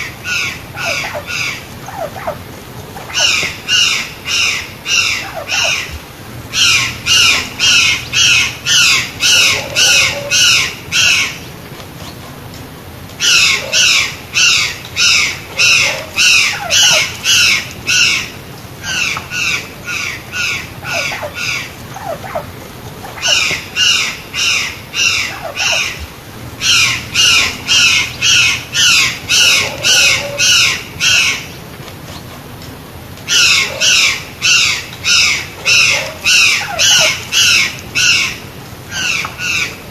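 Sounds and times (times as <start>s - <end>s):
jay calling loudly: 3.0s - 11.4s, 26.6s - 31.5s.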